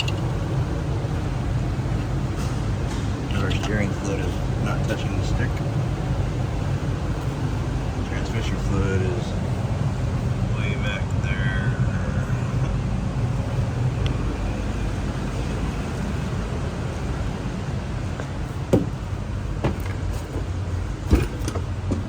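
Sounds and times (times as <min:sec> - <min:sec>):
diesel engine idling: 0:00.0 - 0:22.0
sharp engine knocks: 0:18.7 - 0:22.0.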